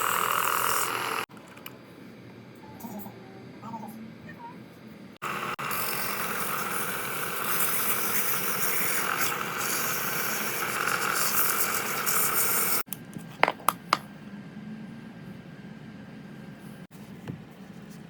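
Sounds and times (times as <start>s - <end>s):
small machine buzzing rattle: 0.0s - 1.3s, 5.2s - 12.9s.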